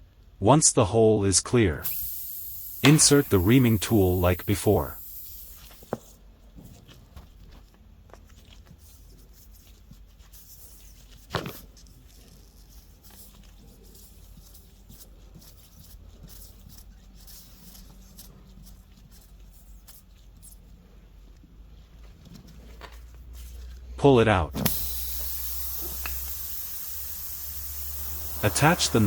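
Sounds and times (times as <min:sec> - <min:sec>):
reamer scratching rubber: 0:01.8 - 0:06.2, 0:24.6 - 0:29.0.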